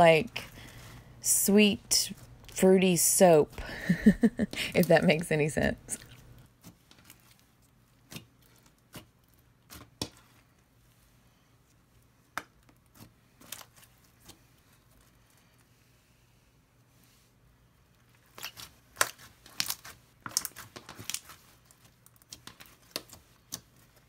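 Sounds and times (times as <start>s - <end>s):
slime with beads squished by hand: 18.2s - 24.0s.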